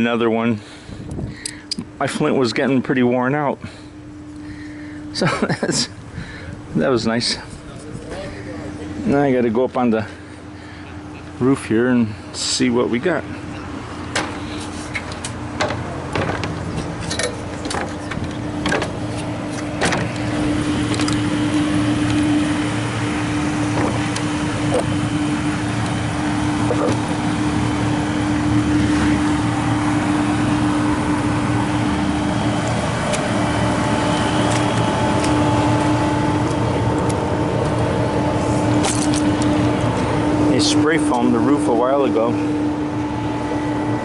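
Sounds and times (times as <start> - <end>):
mechanical drone with hum: 0.0 - 44.0
knocks and clatter: 15.0 - 20.2
higher steady tone: 20.1 - 44.0.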